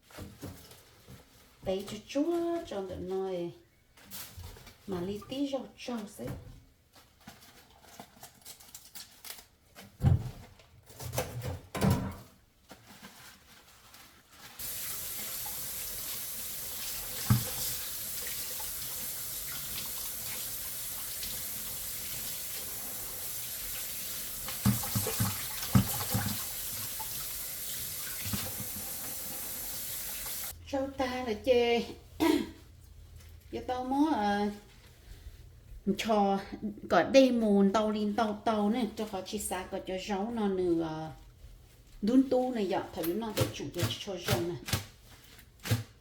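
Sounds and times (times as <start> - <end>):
kitchen tap running into sink: 14.6 - 30.5.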